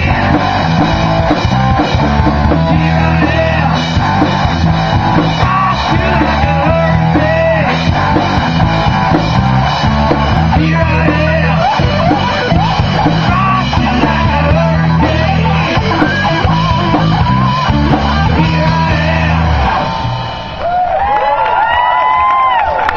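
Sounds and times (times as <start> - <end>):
distorted electric guitar lead: 0.0 - 20.8
hard rock band playing: 0.0 - 20.9
crowd cheering and whooping: 11.2 - 13.6, 15.7 - 22.9.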